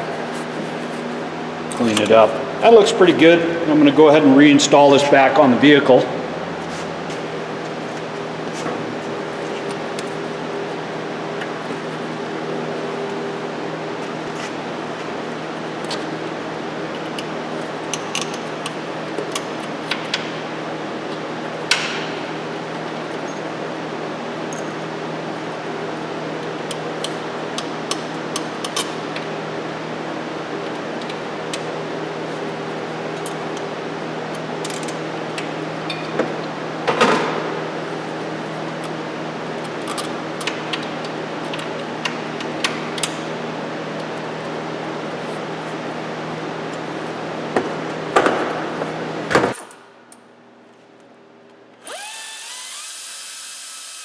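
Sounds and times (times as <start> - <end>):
steady low hum: 0.0 - 15.3.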